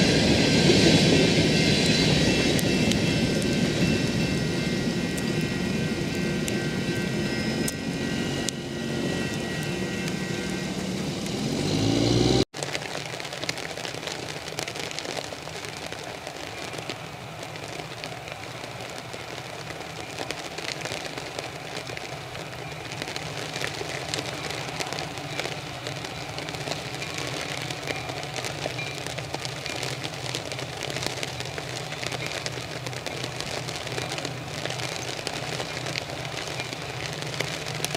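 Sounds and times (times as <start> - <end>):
freight train passing: 0.0 - 37.9
high ringing tones: 0.4 - 12.4
steady rain falling: 12.6 - 37.9.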